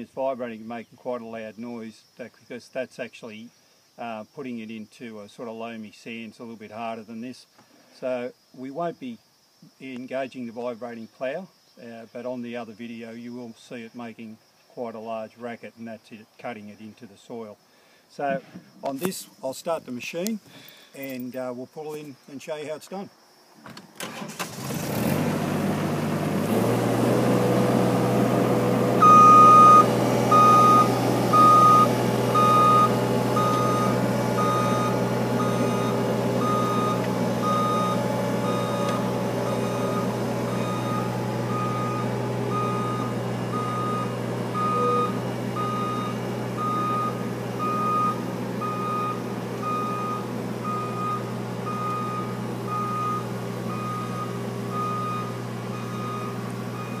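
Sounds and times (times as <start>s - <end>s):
machine engine running: 24.6s - 57.0s
warning beeper: 29.0s - 57.0s.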